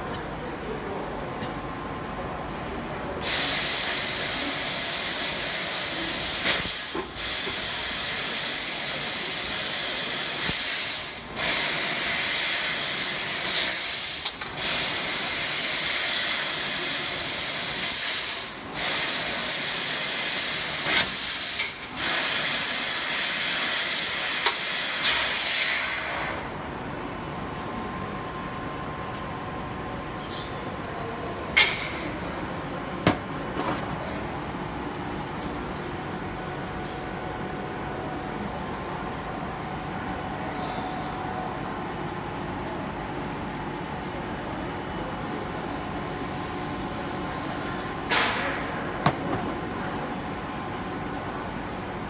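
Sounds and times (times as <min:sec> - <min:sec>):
gas jet hissing loudly: 0:03.2 - 0:26.6.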